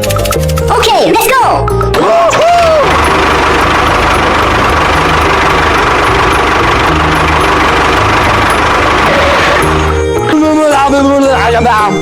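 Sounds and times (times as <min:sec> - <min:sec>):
model tractor motor humming: 0:02.0 - 0:10.1.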